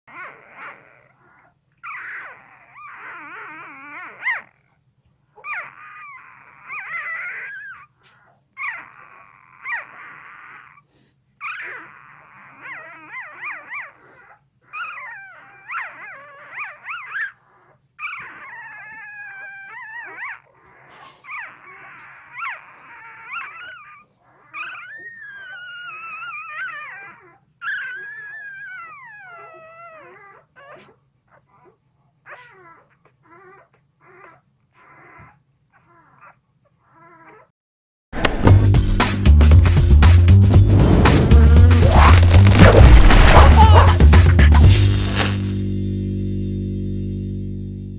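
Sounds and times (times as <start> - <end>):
puppy whimpering and howling: 0.1 - 4.6, 5.4 - 37.5.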